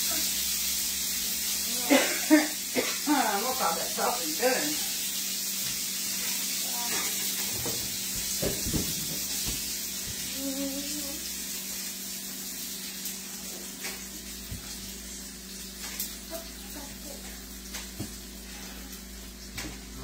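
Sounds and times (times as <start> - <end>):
sausage sizzling in a frying pan: 0.0 - 20.0.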